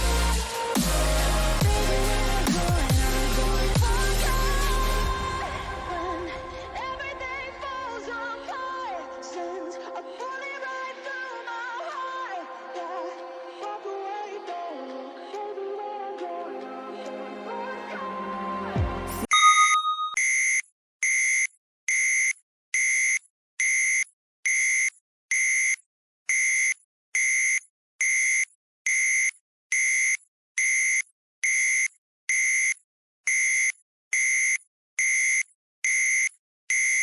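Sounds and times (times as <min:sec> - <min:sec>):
music with falling sweep: 0:00.0 - 0:07.8
timer alarm beeps: 0:19.3 - 0:37.0.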